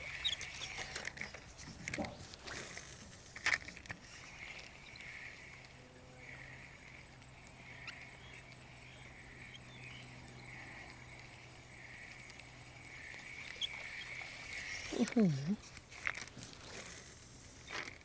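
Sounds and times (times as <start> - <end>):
steady low hum: 0.0 - 18.0
faint pulsing calling: 4.3 - 15.6.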